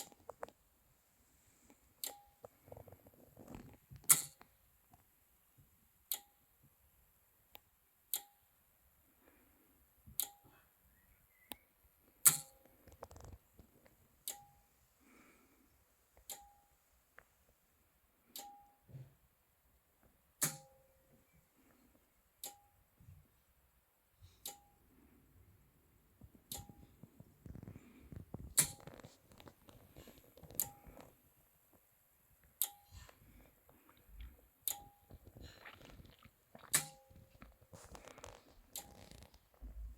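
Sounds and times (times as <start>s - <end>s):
charging relay clicking: 12.2s - 13.0s.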